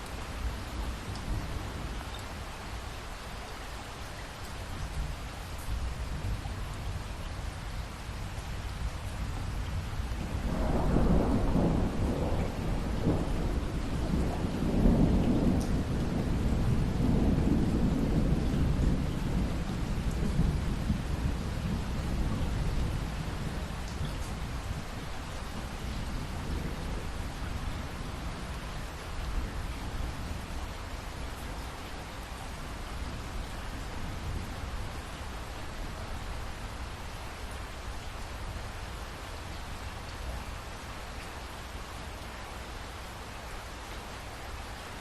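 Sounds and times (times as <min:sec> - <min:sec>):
steady rain falling: 0:00.0 - 0:45.0
thunder rumbling: 0:10.4 - 0:28.6.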